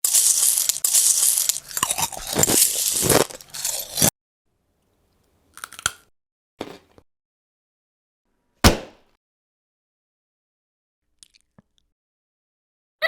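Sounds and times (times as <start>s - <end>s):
loud crunching and chewing: 0.0s - 4.1s.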